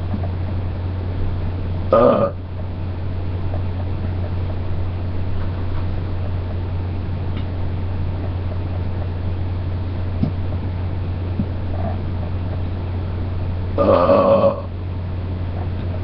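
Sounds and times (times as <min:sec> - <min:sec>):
low hum: 0:00.0 - 0:16.0
person burping: 0:01.9 - 0:02.4, 0:13.8 - 0:14.7.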